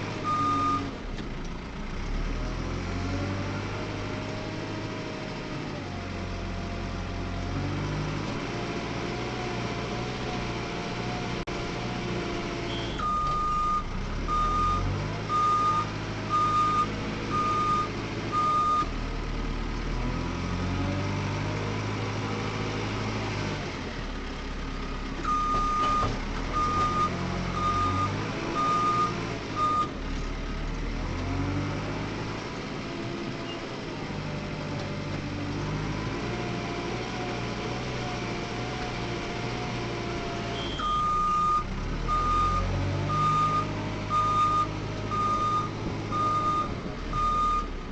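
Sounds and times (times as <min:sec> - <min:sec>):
diesel engine running under load: 0:00.0 - 0:47.9
reversing alarm beeping: 0:12.7 - 0:18.9, 0:25.3 - 0:29.9, 0:40.6 - 0:47.7.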